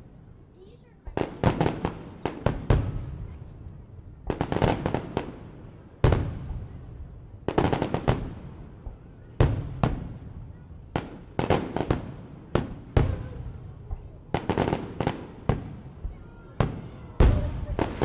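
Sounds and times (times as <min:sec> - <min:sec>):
deep firework boom: 0:15.6 - 0:18.0.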